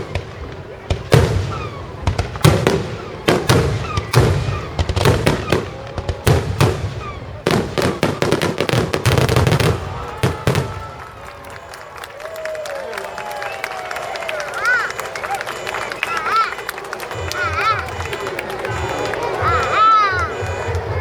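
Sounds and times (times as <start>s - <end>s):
fireworks bangs: 0.0s - 11.9s, 17.1s - 21.0s
fireworks crackling: 0.0s - 12.4s, 14.5s - 21.0s.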